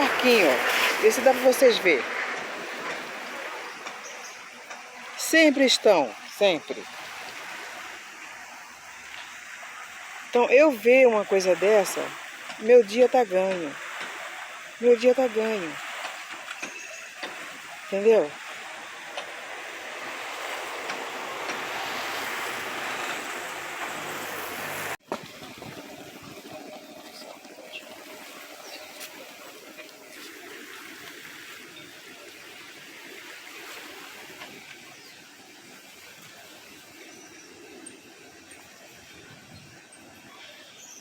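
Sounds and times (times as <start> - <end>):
water lapping against boats: 0.0 - 41.0.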